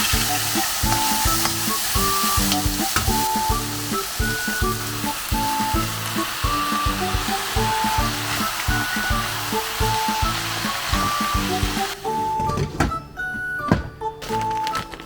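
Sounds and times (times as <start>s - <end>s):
food sizzling in a hot pan: 0.0s - 12.0s
background music with a beat: 0.0s - 15.0s.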